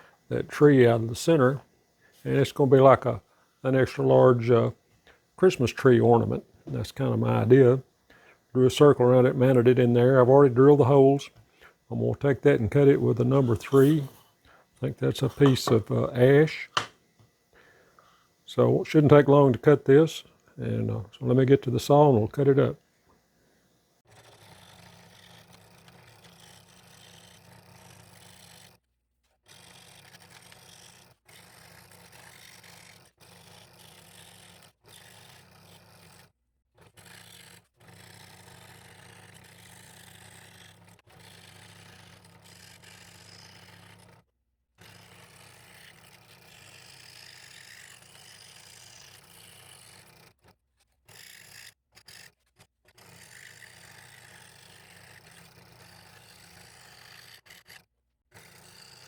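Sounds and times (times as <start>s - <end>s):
scroll saw motor hum: 11.9s - 17.4s, 24.1s - 44.2s, 44.8s - 59.0s.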